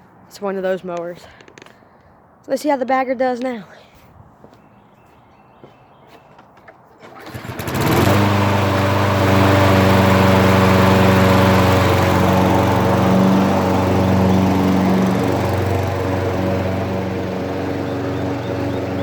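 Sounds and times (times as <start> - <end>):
lawn mower engine starting and running: 7.0 - 19.0.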